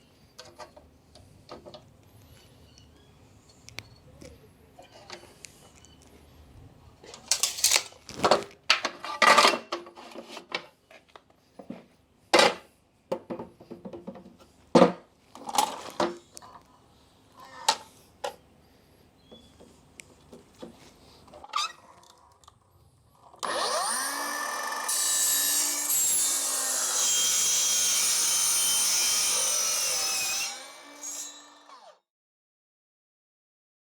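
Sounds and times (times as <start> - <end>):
power saw cutting with screechy whine: 23.4 - 32.0.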